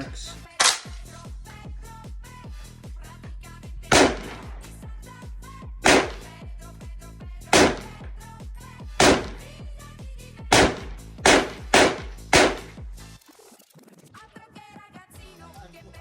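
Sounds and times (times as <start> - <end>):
background music with beat: 0.0 - 16.0
rifle shots: 0.6 - 1.0, 3.9 - 4.7, 5.8 - 6.3, 7.5 - 8.0, 9.0 - 9.5, 10.5 - 12.8.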